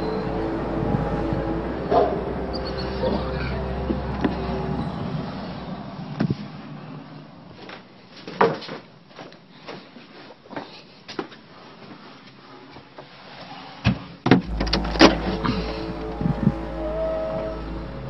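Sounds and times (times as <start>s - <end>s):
low drone: 0.0s - 7.4s, 14.4s - 18.0s
knocks and clunks: 13.9s - 16.6s.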